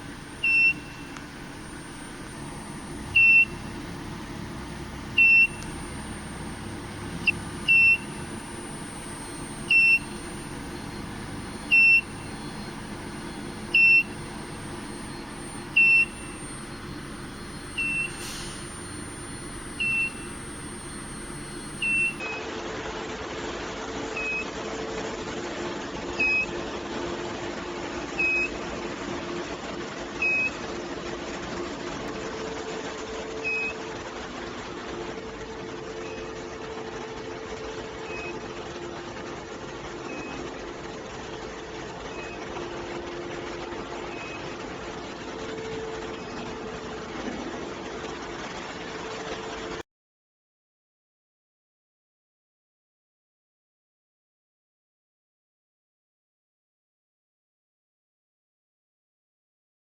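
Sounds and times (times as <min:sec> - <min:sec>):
machine hum: 0:00.0 - 0:22.2
short electronic beeps: 0:00.0 - 0:22.3.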